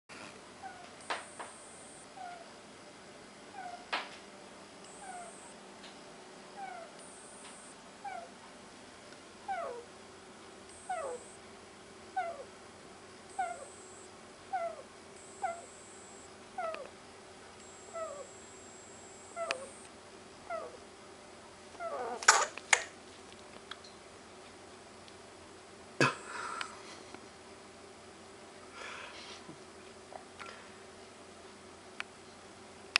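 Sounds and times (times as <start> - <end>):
guinea pig snoring: 2.1 - 2.4, 3.5 - 3.9, 4.9 - 5.5, 6.6 - 7.2, 9.5 - 9.9, 10.7 - 11.4, 12.1 - 12.5, 13.3 - 16.8, 17.8 - 18.4, 21.8 - 22.2.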